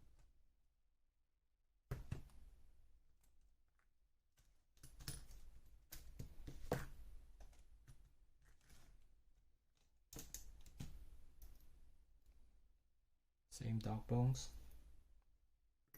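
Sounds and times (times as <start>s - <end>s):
clicks and knocks of small parts: 10.1s - 11.7s.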